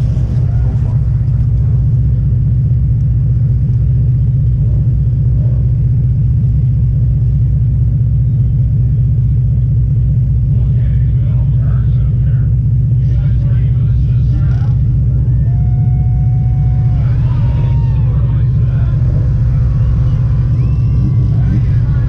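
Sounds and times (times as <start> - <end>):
car engine rumbling: 0.0 - 22.0.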